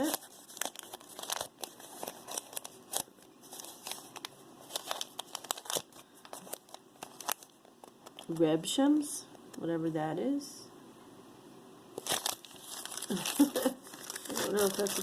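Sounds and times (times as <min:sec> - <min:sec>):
plastic bags crinkling: 0:00.0 - 0:08.4, 0:12.0 - 0:15.0.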